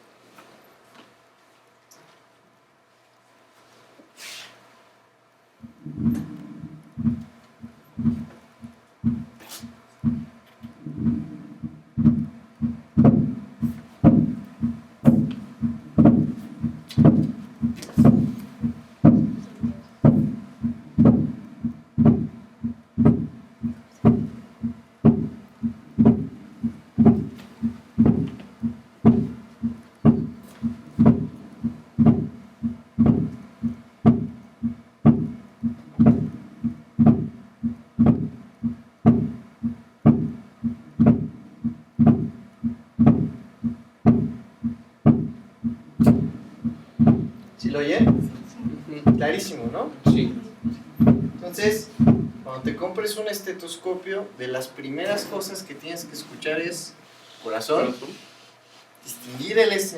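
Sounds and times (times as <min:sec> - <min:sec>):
heartbeat low thuds: 0:05.6 - 0:52.8.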